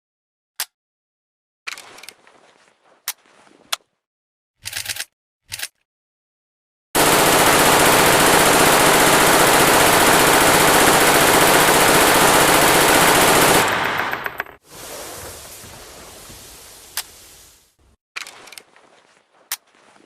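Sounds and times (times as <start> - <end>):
gunfire echo: 7.0 - 14.4
machine gun firing burst: 7.0 - 14.6.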